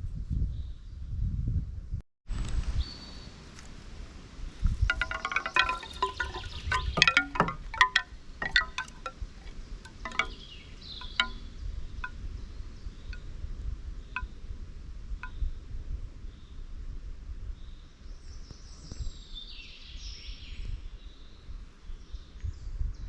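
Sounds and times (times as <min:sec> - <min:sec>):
chimes ringing: 0:04.9 - 0:09.2, 0:09.9 - 0:10.4.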